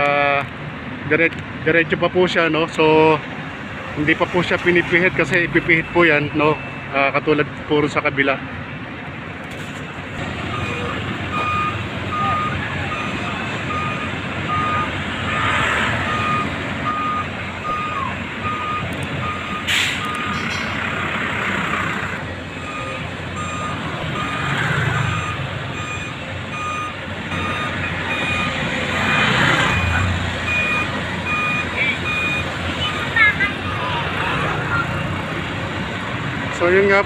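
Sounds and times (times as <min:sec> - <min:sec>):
street traffic passing: 0:00.0 - 0:37.0
reversing alarm beeping: 0:05.6 - 0:07.0, 0:10.5 - 0:21.0, 0:22.5 - 0:35.0
higher-pitched beeping: 0:10.5 - 0:21.2, 0:22.5 - 0:35.2.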